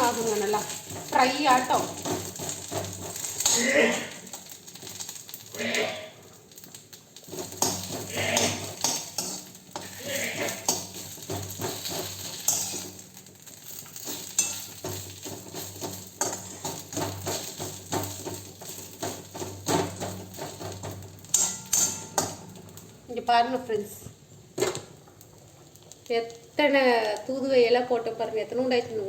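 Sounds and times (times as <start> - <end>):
spoon scraping a pan: 0.0 - 22.9
leaves sizzling in a pan: 0.0 - 29.0.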